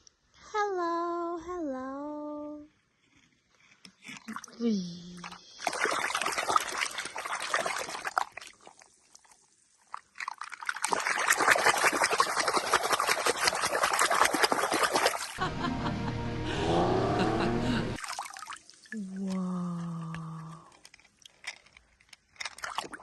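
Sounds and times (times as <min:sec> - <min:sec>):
water pouring and splashing: 0:04.0 - 0:15.4, 0:18.0 - 0:21.7, 0:22.3 - 0:23.0.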